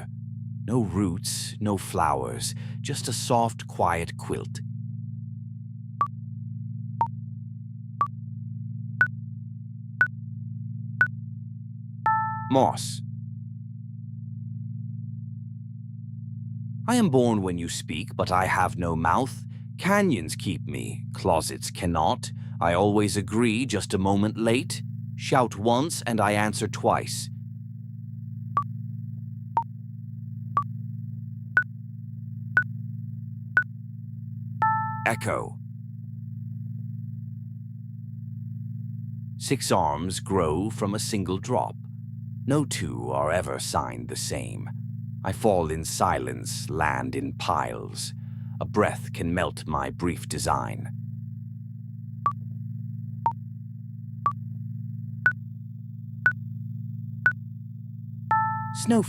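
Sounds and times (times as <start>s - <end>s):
low electronic drone: 0.0s - 59.0s
low synthetic hum: 0.0s - 59.0s
short electronic beeps: 12.1s - 12.6s, 34.6s - 35.3s, 58.3s - 59.0s.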